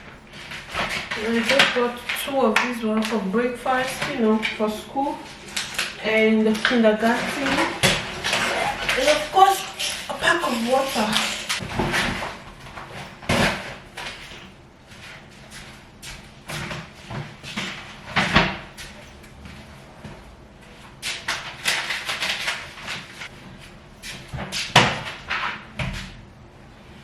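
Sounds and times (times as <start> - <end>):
packaging rustling: 0.0 - 15.6, 21.1 - 23.3
knocks and bangs of items: 6.6 - 14.4.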